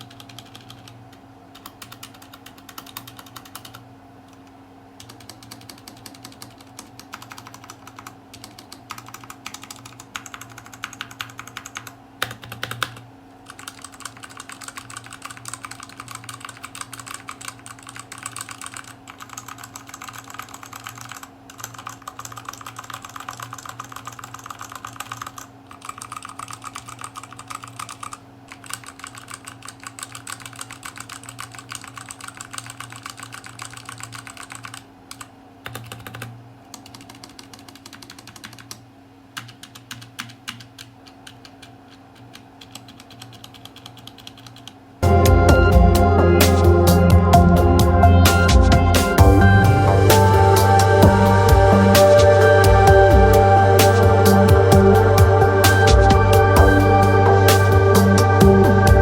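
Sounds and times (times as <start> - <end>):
mechanical keyboard typing: 0.0 - 4.4, 5.0 - 38.8, 39.4 - 44.8
steady low hum: 44.9 - 59.0.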